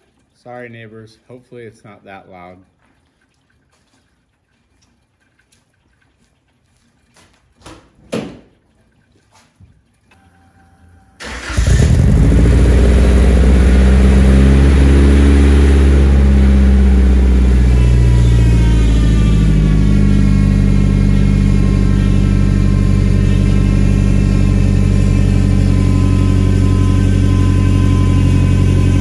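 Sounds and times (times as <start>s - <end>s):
belt whine: 10.2s - 29.0s
car engine cranking and idling: 11.2s - 29.0s.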